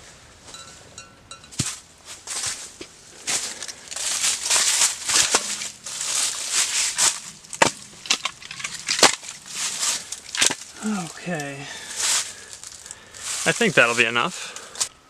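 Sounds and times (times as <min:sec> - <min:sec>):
dry wood crunching and crackling: 0:01.5 - 0:15.0
wood snapping: 0:03.6 - 0:11.5.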